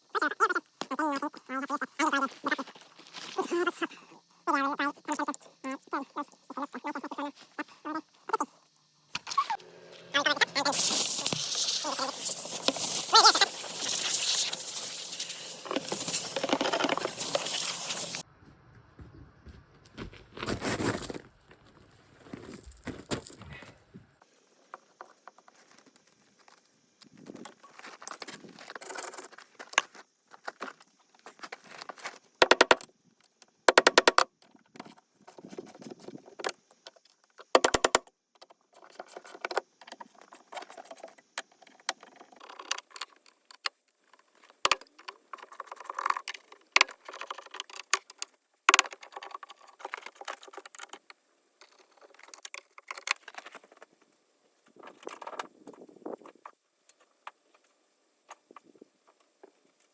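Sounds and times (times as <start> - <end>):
rapid clicking: 33.7 - 34.2.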